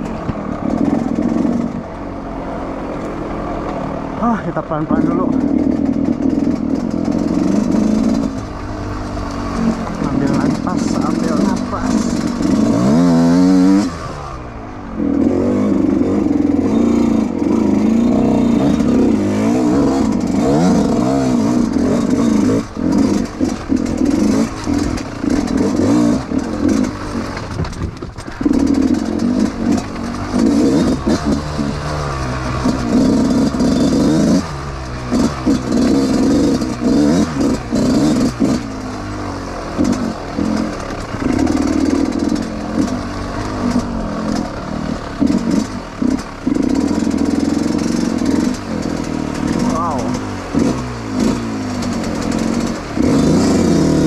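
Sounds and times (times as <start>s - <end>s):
dirt bike engine revving: 0.0s - 54.0s
clattering from bike: 2.9s - 13.9s, 18.4s - 54.0s.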